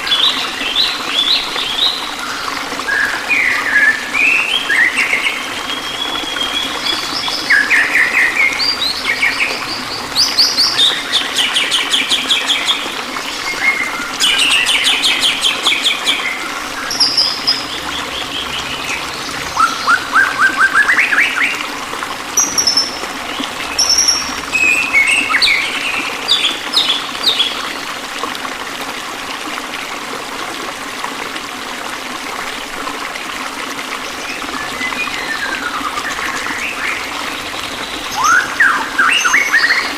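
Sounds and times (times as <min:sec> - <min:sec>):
flowing water rushing: 0:00.0 - 0:39.9
songbirds chirping and trilling: 0:04.8 - 0:27.7.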